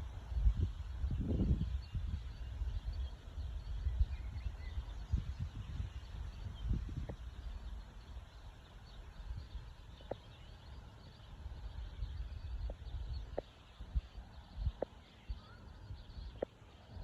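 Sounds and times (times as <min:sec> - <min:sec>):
faint birdsong: 0:00.0 - 0:17.0.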